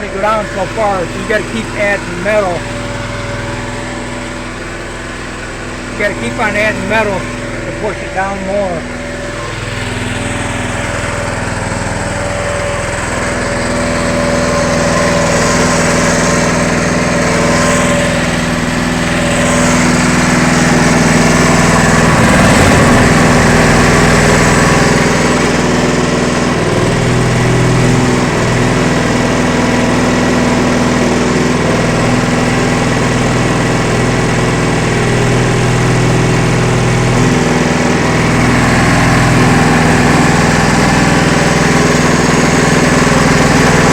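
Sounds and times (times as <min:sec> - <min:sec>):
gas engine running steadily: 0:00.0 - 0:43.9.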